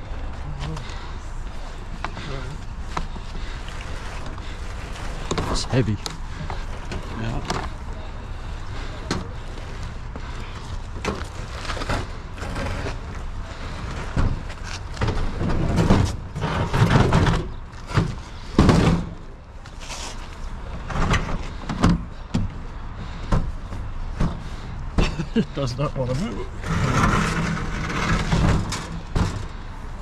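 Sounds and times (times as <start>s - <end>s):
metal appliance scraping and knocking: 26.6s - 29.5s.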